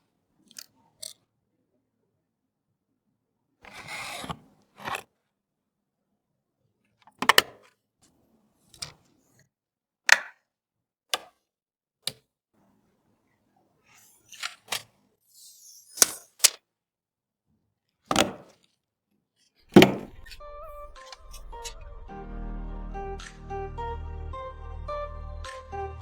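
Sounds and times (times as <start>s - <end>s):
heavy thud: 19.7s - 20.8s
hardware clicks and taps: 19.8s - 20.4s.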